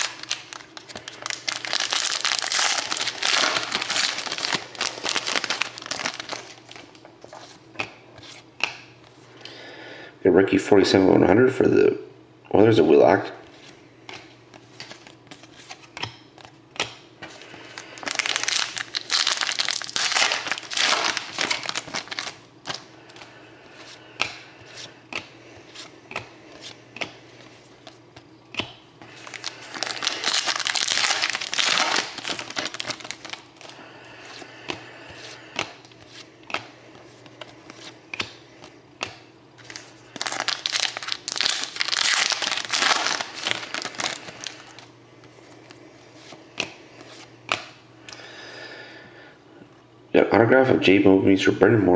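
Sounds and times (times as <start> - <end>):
wrappers crinkling: 0.0 - 7.6, 17.3 - 23.3, 29.1 - 34.4, 39.6 - 44.9
cards clicking and tapping: 25.1 - 27.2, 27.8 - 28.8, 35.5 - 39.2.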